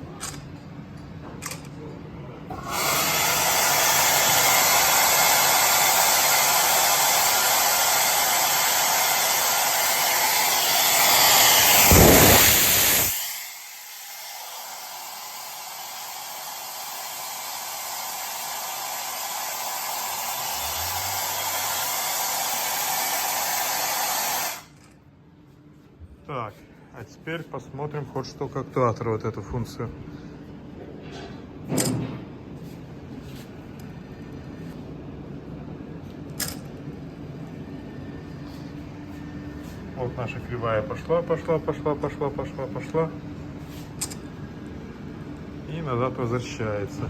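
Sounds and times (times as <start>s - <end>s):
turbocharger air rushing and whining: 2.5s - 24.8s.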